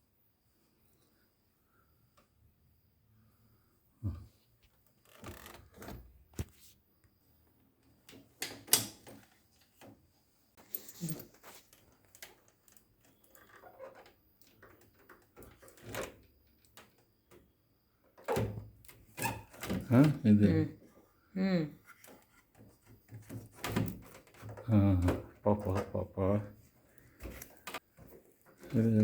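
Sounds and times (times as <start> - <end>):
plastic parts clicking and knocking: 11.4 - 17.5, 21.9 - 26.1, 27.0 - 29.0.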